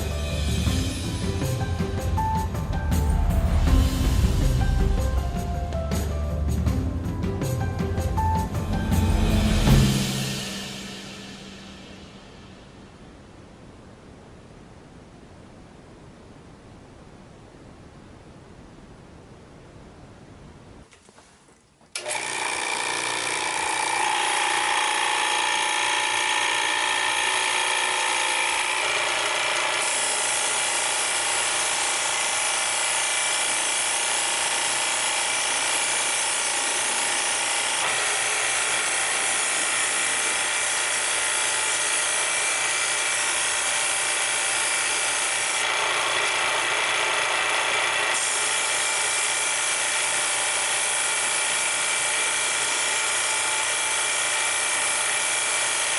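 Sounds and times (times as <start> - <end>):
cleaning machine motor whine: 22.0 - 55.9.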